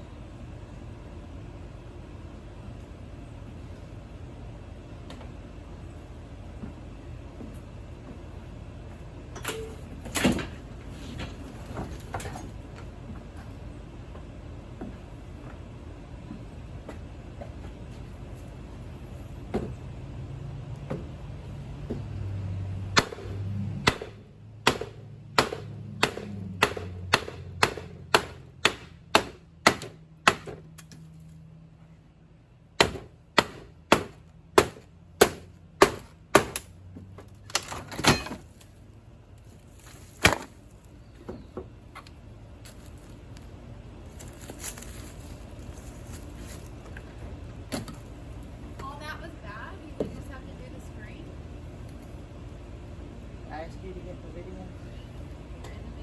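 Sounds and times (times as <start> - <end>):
hammer striking: 23.0 - 30.9, 32.8 - 36.7.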